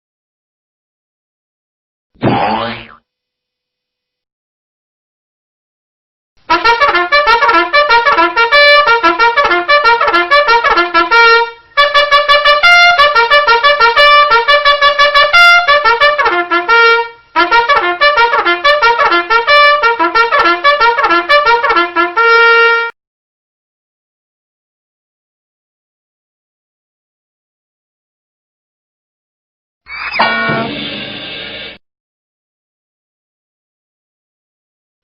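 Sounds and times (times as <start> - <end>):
fast trumpet tune: 6.5 - 23.0.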